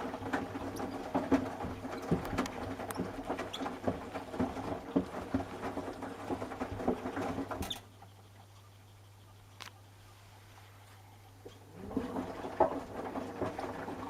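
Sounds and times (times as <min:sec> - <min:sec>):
shoes knocking in washing machine drum: 0:00.0 - 0:07.8.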